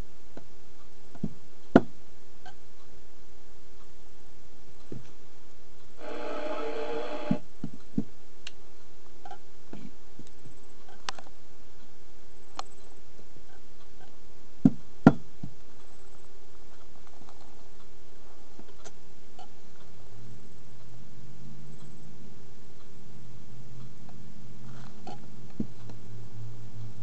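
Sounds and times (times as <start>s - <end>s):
steady hum: 6.0s - 7.5s.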